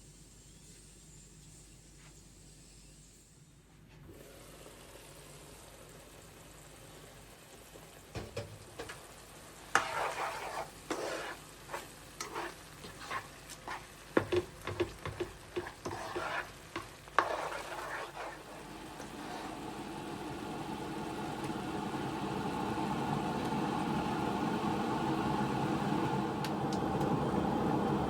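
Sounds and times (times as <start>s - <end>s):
utensil stirring and scraping pan: 9.6s - 19.8s
utensil knocking against pan: 14.2s - 15.8s.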